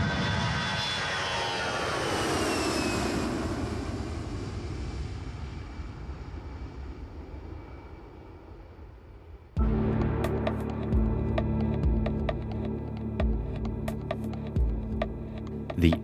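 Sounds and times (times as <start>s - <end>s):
jet airliner flying past: 0.0s - 9.5s.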